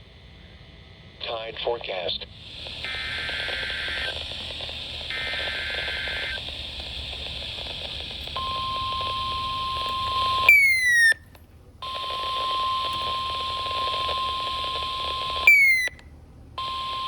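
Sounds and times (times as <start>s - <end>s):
radio hiss: 0.3s - 11.2s, 11.8s - 16.0s
steady warning alarm tone: 2.0s - 17.0s
short dual-tone beeps: 8.4s - 11.2s, 11.8s - 16.0s.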